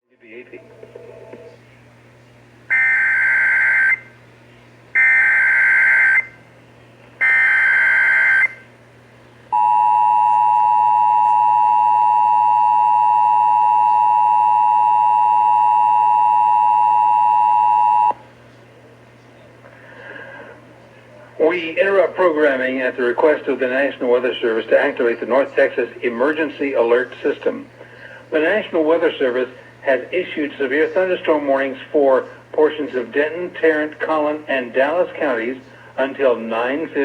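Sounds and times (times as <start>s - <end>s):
two-tone attention signal: 9.6s - 18.2s.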